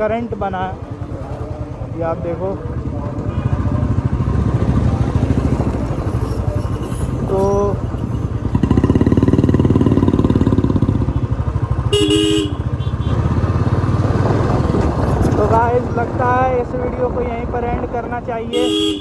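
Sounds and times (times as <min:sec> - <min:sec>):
vehicle horn: 0:11.0 - 0:13.5, 0:18.5 - 0:19.0.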